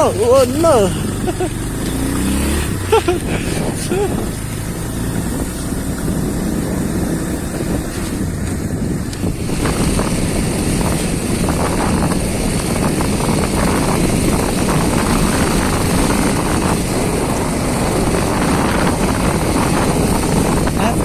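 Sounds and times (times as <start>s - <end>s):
motorcycle engine running: 0.0s - 21.0s
motorcycle rattling over bumps: 0.0s - 21.0s.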